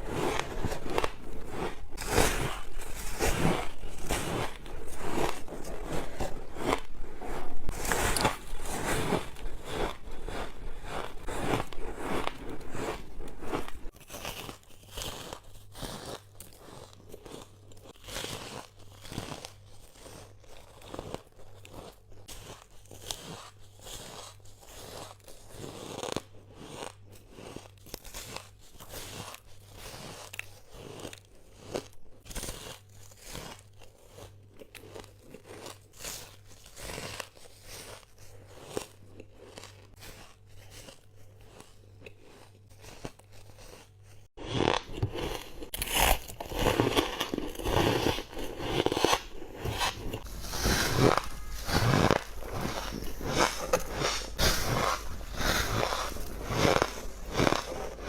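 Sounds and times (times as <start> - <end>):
ice crunching bites: 44.4 - 58.0.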